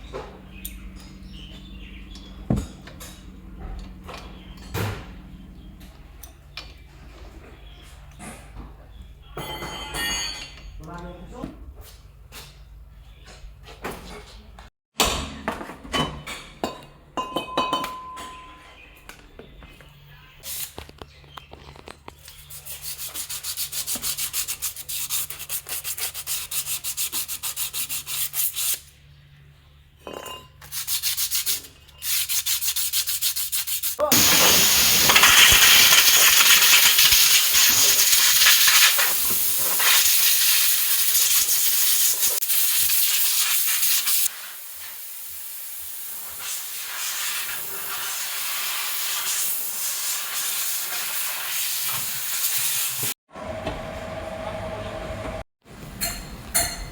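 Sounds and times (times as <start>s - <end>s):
loud steady hiss: 34.1s - 53.1s.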